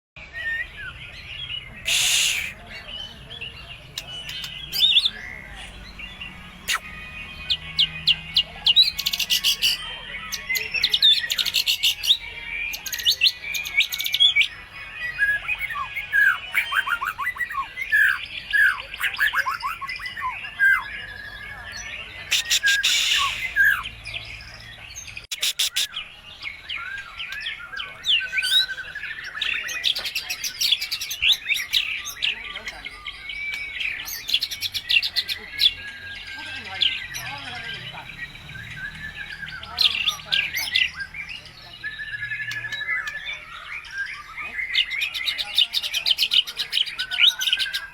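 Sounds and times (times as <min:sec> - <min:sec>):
songbird whistles and trills: 0:00.2 - 0:47.9
harsh rasping bird chatter: 0:01.5 - 0:12.2, 0:22.2 - 0:24.0, 0:25.3 - 0:26.1.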